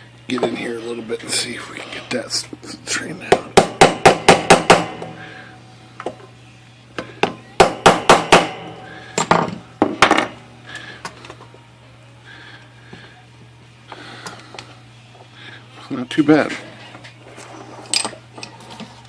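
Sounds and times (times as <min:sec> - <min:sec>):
hammer striking metal: 0:03.3 - 0:05.2, 0:07.2 - 0:10.3.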